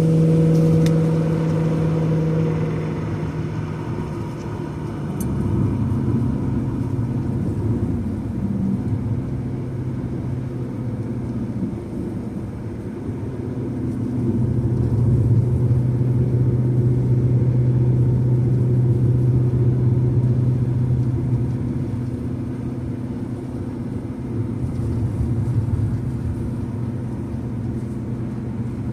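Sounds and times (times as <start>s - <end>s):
engine humming: 0.0s - 28.9s.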